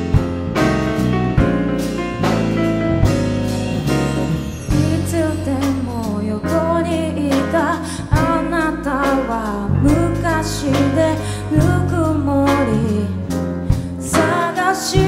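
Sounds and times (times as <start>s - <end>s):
pop song with band: 4.2s - 15.0s.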